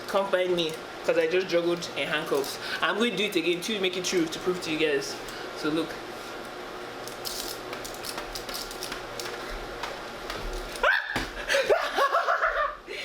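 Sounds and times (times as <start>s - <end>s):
person exclaiming: 10.8s - 11.8s.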